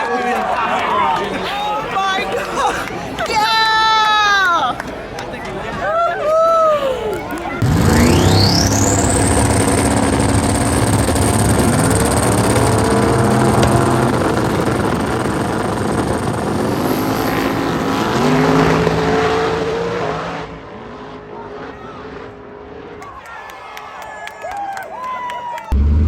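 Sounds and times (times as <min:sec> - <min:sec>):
race car engines at full throttle: 0:07.4 - 0:23.2, 0:25.7 - 0:26.0
high steady whine: 0:07.6 - 0:19.1, 0:25.8 - 0:26.0.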